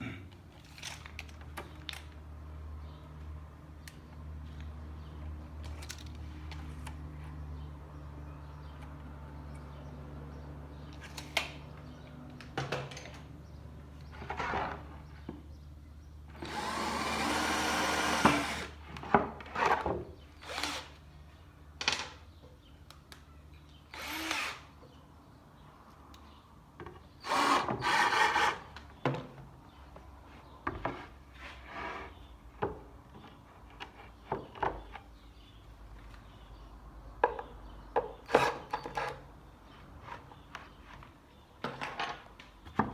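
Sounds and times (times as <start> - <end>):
saw cutting wood: 16.4 - 18.8, 24.0 - 24.7, 27.2 - 28.7
table saw humming: 16.4 - 18.8, 24.0 - 24.6.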